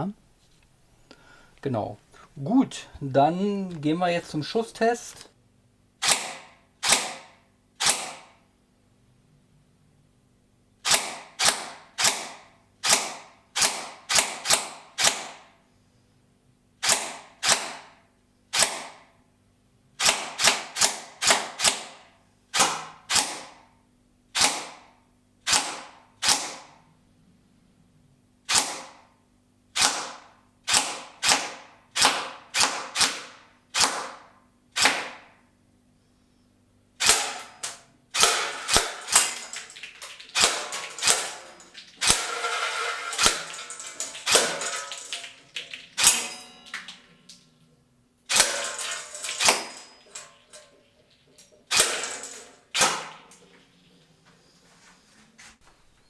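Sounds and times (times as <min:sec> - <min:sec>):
airsoft rifle shots: 0:06.0 - 0:08.4, 0:10.8 - 0:15.6, 0:16.8 - 0:19.2, 0:20.0 - 0:23.7, 0:24.4 - 0:26.8, 0:28.5 - 0:29.1, 0:29.8 - 0:35.4, 0:37.0 - 0:46.4, 0:48.3 - 0:50.4, 0:51.7 - 0:53.3.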